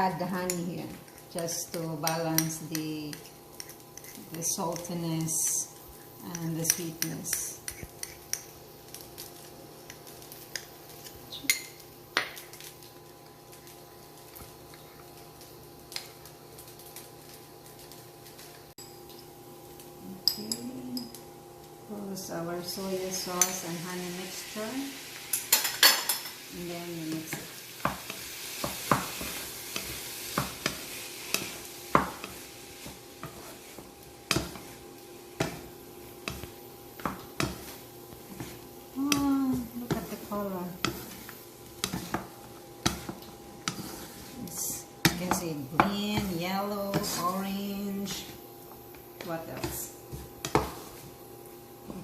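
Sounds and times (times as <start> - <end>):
faint hum: 0.0 - 25.5
food sizzling: 0.0 - 52.0
utensil scraping a pan: 39.6 - 44.8.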